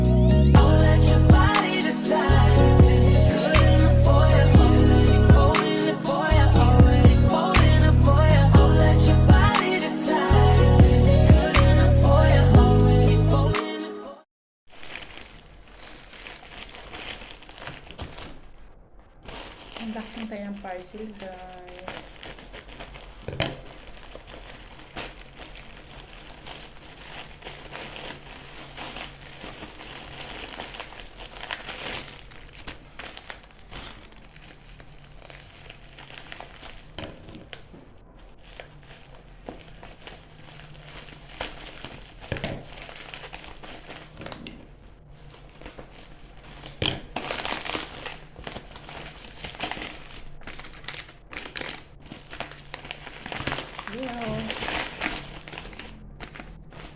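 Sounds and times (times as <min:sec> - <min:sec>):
packaging crinkling and rustling: 0:14.7 - 0:56.9.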